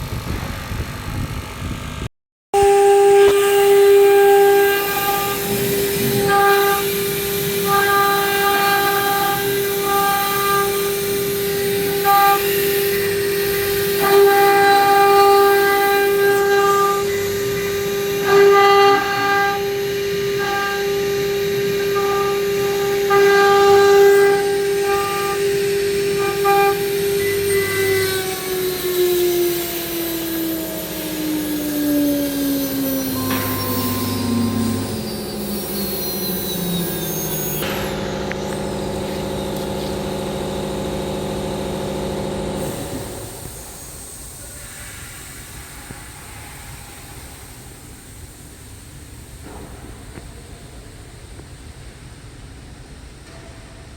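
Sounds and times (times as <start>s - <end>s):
router spindle whining: 2.6s - 43.8s.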